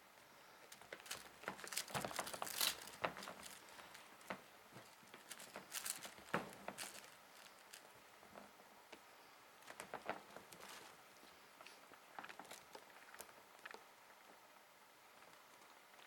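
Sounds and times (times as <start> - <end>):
kitten paws scampering: 0.7 - 8.5.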